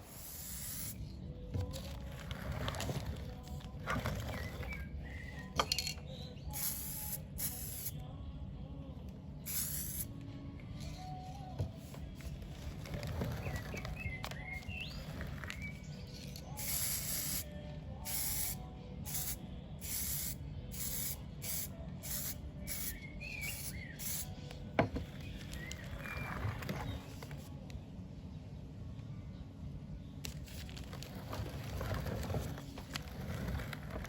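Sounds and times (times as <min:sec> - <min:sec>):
aerosol spray hissing: 0:00.0 - 0:01.0, 0:06.6 - 0:08.0, 0:09.5 - 0:10.1, 0:16.6 - 0:17.5, 0:18.1 - 0:24.4.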